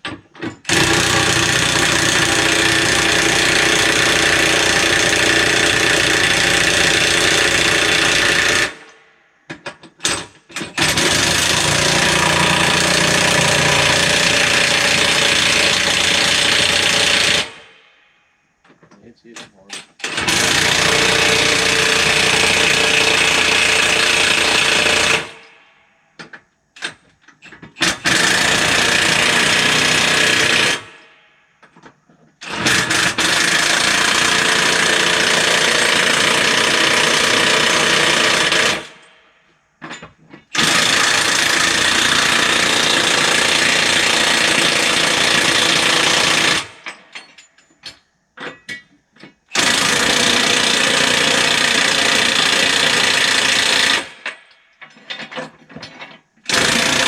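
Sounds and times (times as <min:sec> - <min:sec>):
impact wrench hammering: 0:10.6 - 0:17.5.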